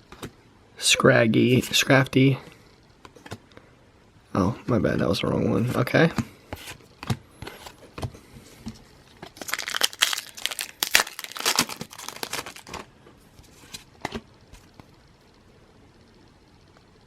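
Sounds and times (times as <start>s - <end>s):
foil wrapper tearing and crinkling: 9.4s - 12.8s.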